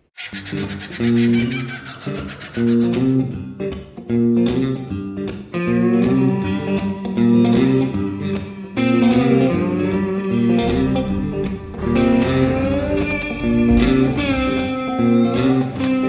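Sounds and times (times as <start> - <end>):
strummed guitar music: 10.6 - 16.0.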